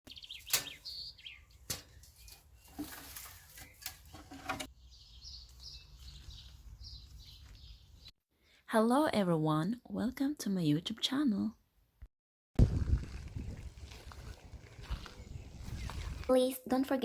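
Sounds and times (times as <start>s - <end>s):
birds chirping: 0.1s - 8.1s, 14.7s - 16.3s.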